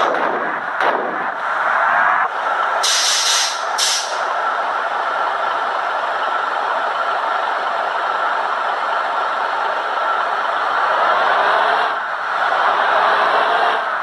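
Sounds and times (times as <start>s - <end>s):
bus engine running with whine: 0.0s - 14.0s
short air hisses: 2.8s - 4.3s.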